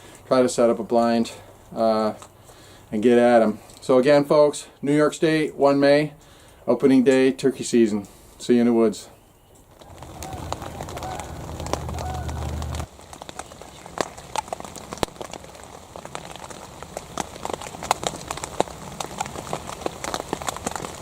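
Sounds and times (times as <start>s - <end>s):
footsteps in dry leaves: 9.7s - 21.0s.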